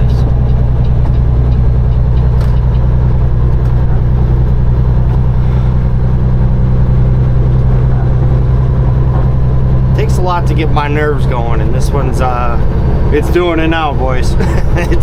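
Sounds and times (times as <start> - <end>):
truck diesel engine drone: 0.0 - 15.0.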